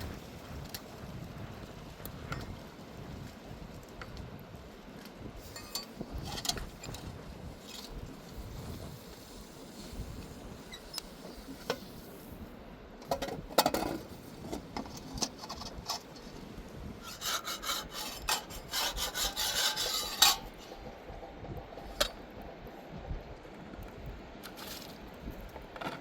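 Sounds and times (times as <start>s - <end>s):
rubbing and scraping: 13.6s - 21.1s.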